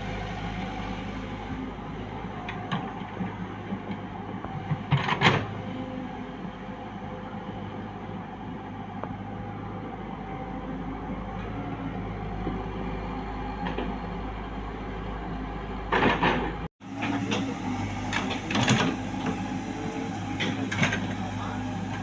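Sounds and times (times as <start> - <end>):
backhoe engine running: 0.0 - 22.0
rough bursts of machine noise: 16.8 - 22.0.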